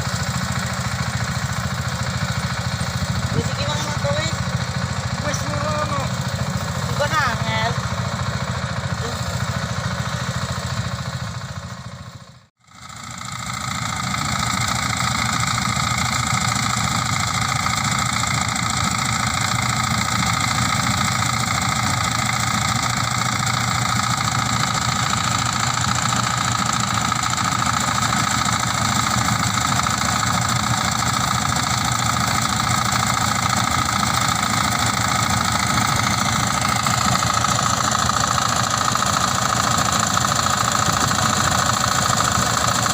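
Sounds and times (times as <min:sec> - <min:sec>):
harvester engine running: 0:00.0 - 0:42.9.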